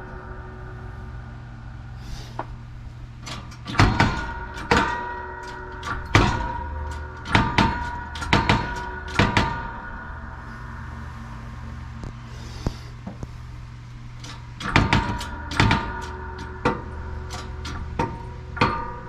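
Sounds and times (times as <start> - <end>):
steady low hum: 0.0 - 19.0
metallic knocks with ringing: 3.6 - 10.0.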